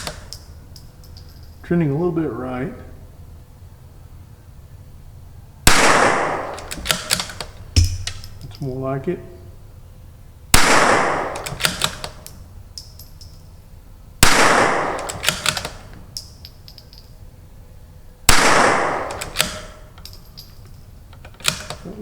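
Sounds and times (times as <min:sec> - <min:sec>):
rifle shots: 0:05.7 - 0:08.6, 0:10.5 - 0:12.3, 0:14.2 - 0:15.9, 0:18.3 - 0:20.0
rifle bolt clicking: 0:06.4 - 0:08.7, 0:11.3 - 0:13.4, 0:14.9 - 0:17.1, 0:18.9 - 0:21.8.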